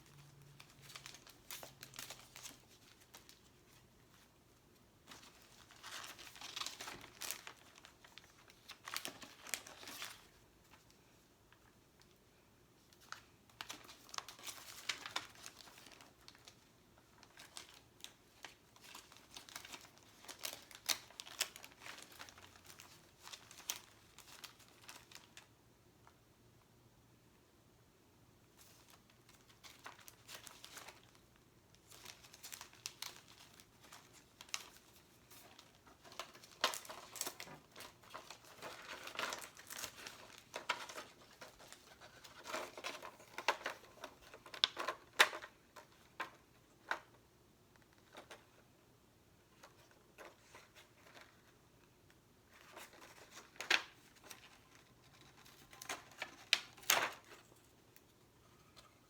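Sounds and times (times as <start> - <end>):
stickers crinkling and peeling: 0.0 - 4.3, 5.0 - 10.4, 13.0 - 25.5, 28.8 - 47.1.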